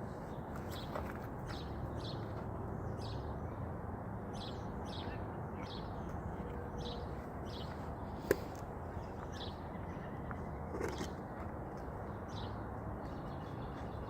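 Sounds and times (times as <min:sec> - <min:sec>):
steady background noise: 0:00.0 - 0:14.0
small birds chirping: 0:04.3 - 0:14.0.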